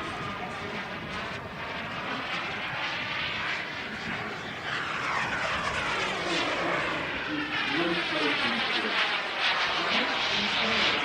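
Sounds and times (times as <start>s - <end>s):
jet engine flyby whoosh: 4.1s - 11.0s.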